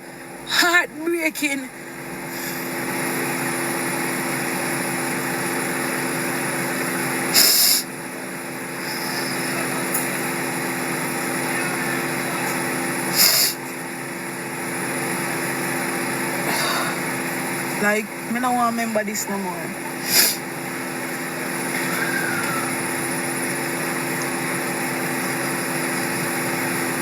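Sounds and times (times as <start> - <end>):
motor hum: 0.0 - 27.0
loud hissing bursts: 1.8 - 8.0, 8.6 - 13.7, 20.0 - 27.0.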